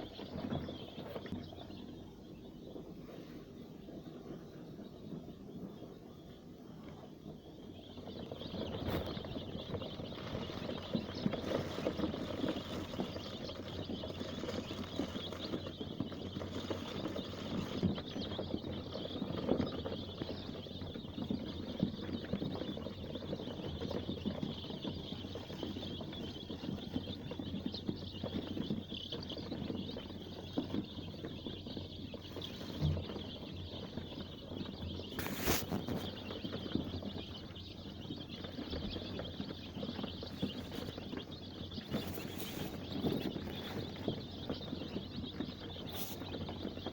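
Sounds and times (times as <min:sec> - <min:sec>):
chicks peeping: 0:00.0 - 0:46.9
small scuffs and taps: 0:35.1 - 0:36.2.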